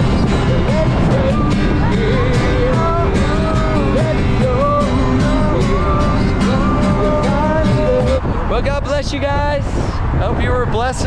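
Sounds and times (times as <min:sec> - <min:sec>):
person singing: 0:00.0 - 0:08.2.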